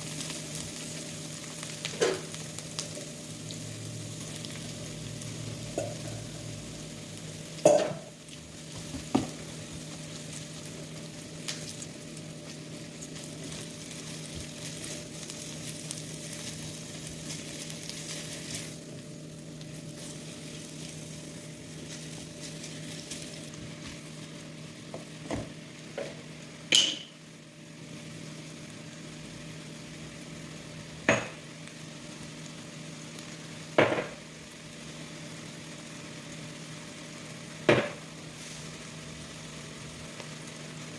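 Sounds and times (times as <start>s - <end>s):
food sizzling in a frying pan: 0.0s - 40.9s.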